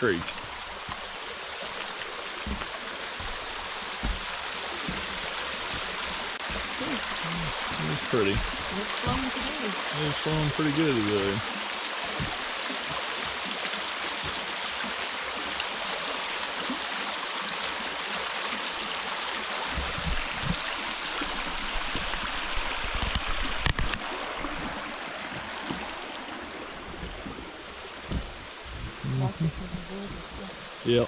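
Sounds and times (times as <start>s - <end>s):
creek rushing over rocks: 0.0s - 31.0s
low thumps: 0.2s - 10.6s, 12.2s - 12.5s, 19.7s - 22.2s, 26.6s - 30.6s.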